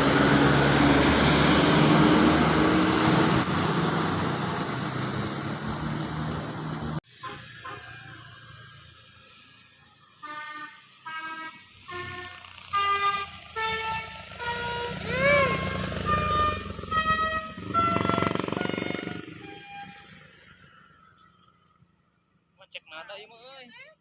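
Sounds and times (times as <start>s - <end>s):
bus engine running: 0.0s - 21.2s
musical bus horn tune: 7.1s - 8.2s, 10.2s - 20.3s.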